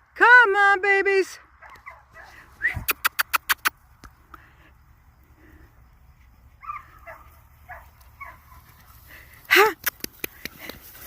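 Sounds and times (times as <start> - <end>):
sharp clicks: 9.8 - 10.8.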